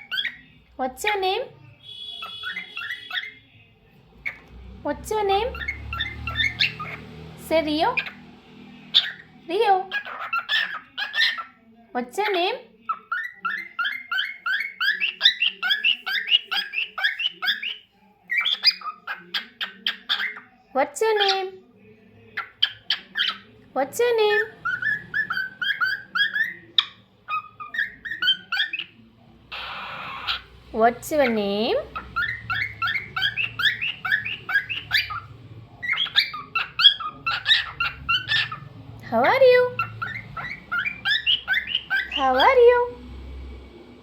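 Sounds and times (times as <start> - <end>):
cockatiel chirping: 0.0 - 0.5, 1.8 - 3.4, 5.5 - 7.1, 7.9 - 8.2, 8.9 - 9.2, 9.9 - 11.6, 12.8 - 20.5, 22.4 - 23.5, 24.4 - 30.5, 31.2 - 38.7, 39.7 - 42.5.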